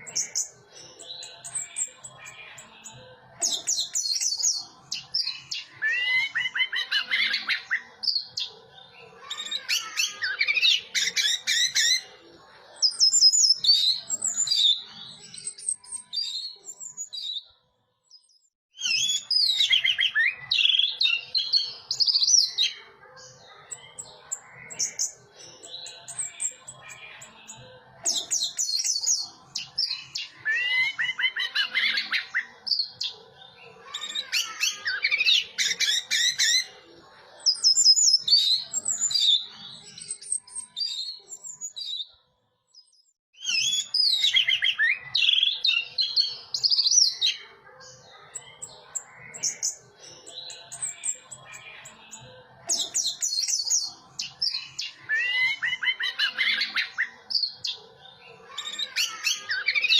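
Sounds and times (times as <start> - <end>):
bird singing whistled trills: 0.0 - 8.5, 12.8 - 17.5, 18.1 - 22.7, 42.8 - 47.3, 48.3 - 57.8.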